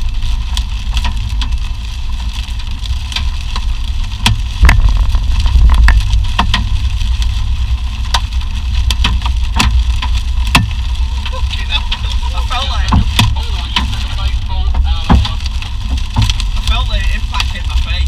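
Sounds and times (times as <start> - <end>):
vehicle rumbling: 0.0 - 18.0
sharp ticks and knocks: 3.0 - 6.9, 8.0 - 11.3, 14.7 - 16.8.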